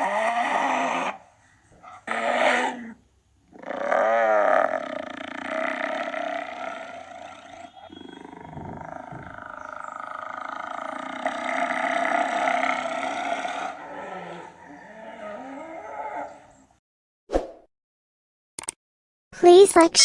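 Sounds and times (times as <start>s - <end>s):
hyena calling: 3.5s - 16.7s.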